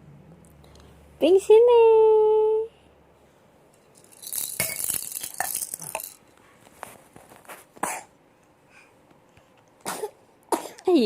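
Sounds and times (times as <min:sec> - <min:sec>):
baby coughing: 0:07.8 - 0:08.1, 0:09.8 - 0:10.9.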